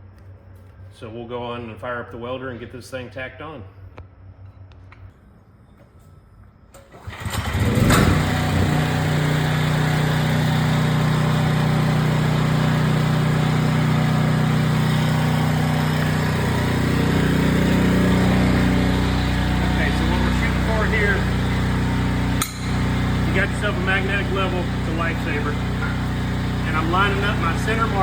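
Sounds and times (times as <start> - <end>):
gas engine cranking and running: 6.7 - 28.0.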